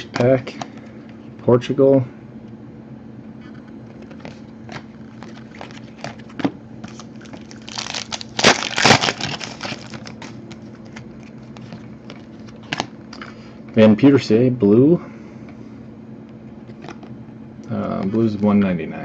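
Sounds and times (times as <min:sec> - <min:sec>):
pack wrapper crinkling: 0:04.0 - 0:12.9.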